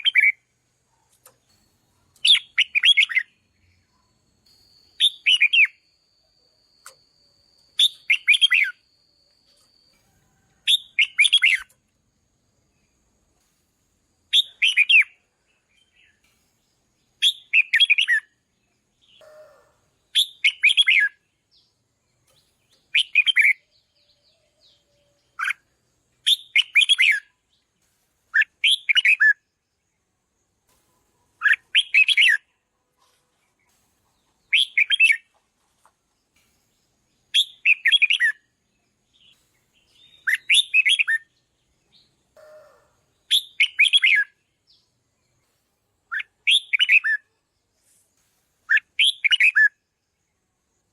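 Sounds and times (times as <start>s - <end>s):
bird singing warbled phrases: 2.2s - 4.1s, 4.9s - 5.8s, 7.7s - 8.9s, 14.3s - 16.3s, 17.0s - 25.6s, 26.2s - 27.4s, 28.4s - 29.4s, 31.4s - 32.6s, 34.2s - 35.4s, 37.2s - 45.3s, 46.1s - 47.3s, 48.7s - 49.8s.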